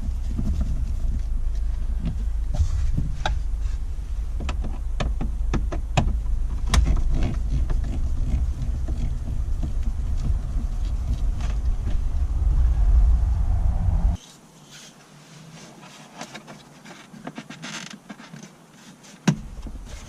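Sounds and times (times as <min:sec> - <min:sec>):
steady low rumble: 0:00.0 - 0:14.2.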